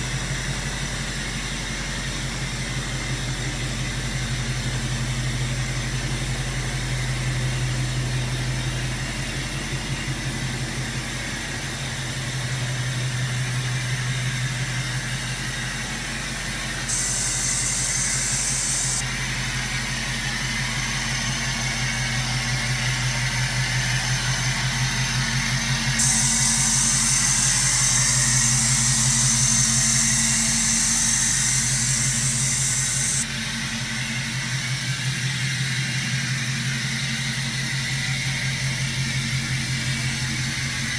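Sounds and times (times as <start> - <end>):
high hiss: 16.9 - 19.0, 26.0 - 33.2.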